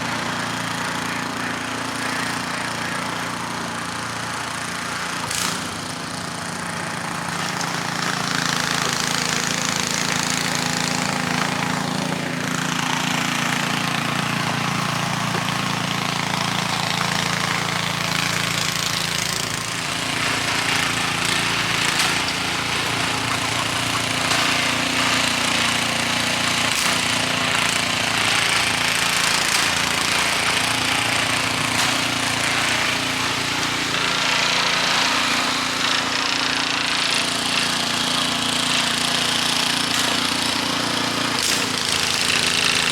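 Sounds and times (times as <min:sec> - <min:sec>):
snowblower engine running: 0:00.0 - 0:42.9.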